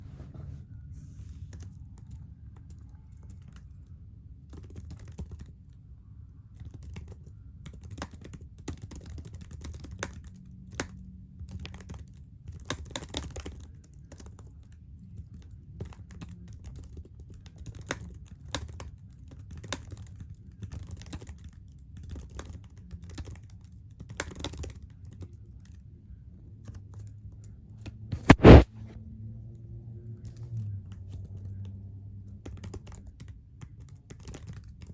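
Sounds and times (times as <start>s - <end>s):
loud thump: 28.2s - 28.6s.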